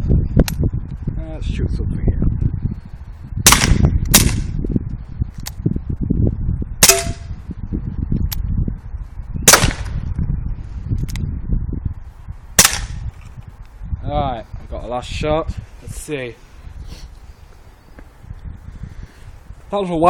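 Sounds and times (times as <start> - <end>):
air pistol shots cracking: 3.5 - 4.5, 6.8 - 7.3, 9.5 - 10.0, 12.6 - 13.0.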